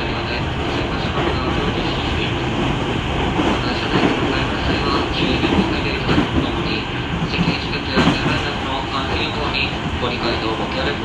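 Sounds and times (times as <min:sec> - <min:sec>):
wheels rumbling on rail: 0:00.0 - 0:11.0
track knocks: 0:03.3 - 0:09.5.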